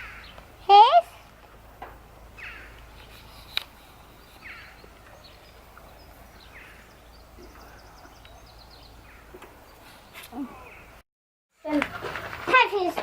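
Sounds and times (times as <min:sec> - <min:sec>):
bird trills: 0:00.0 - 0:00.8, 0:02.2 - 0:11.0
small birds chirping: 0:00.0 - 0:11.0.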